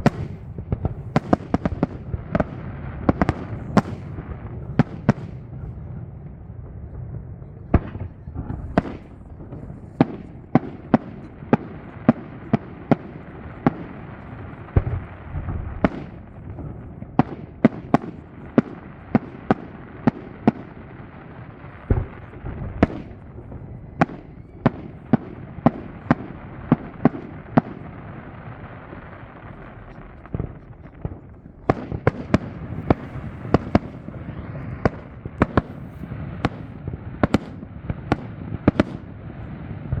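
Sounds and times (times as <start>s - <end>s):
steady low rumble: 0.0s - 12.1s
fireworks bursting in sharp bangs: 0.0s - 40.0s.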